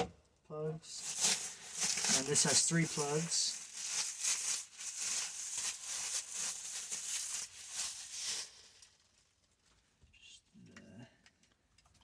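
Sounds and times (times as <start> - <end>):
wiring rustling: 0.9 - 9.9.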